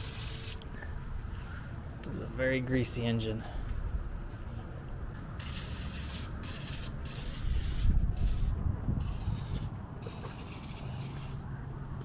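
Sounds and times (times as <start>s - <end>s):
spray can hissing: 0.0s - 0.6s, 5.4s - 11.4s.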